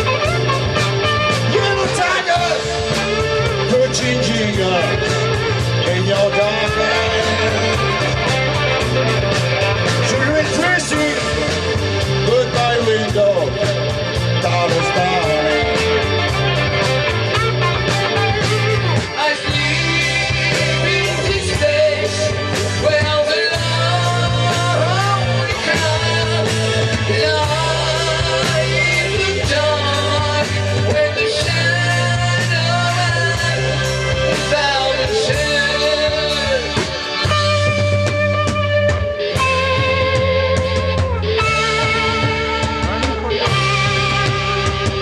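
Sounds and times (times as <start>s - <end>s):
bass guitar: 0.0s - 45.0s
drums: 0.0s - 45.0s
wavering lead electric guitar: 0.0s - 45.0s.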